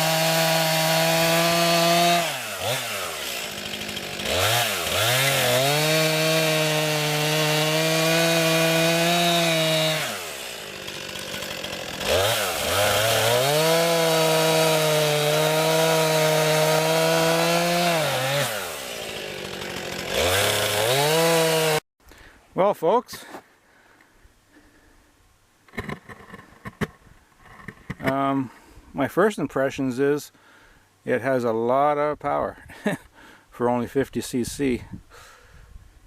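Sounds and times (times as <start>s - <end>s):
chainsaw cutting wood: 0.0s - 21.8s, 25.7s - 28.2s.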